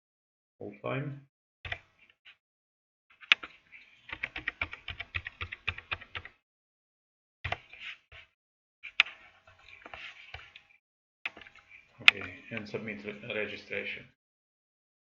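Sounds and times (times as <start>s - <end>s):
computer keyboard typing: 3.2s - 6.4s.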